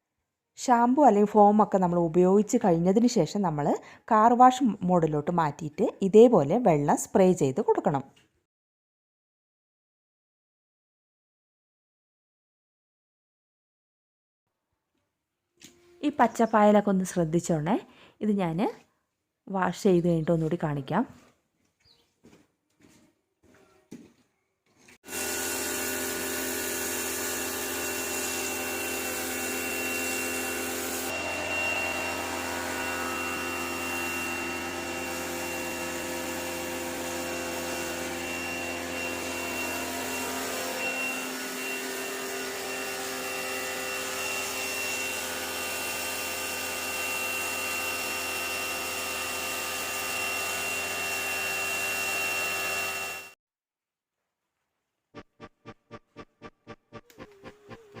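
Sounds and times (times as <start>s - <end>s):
pressure washer running: 25.0s - 53.4s.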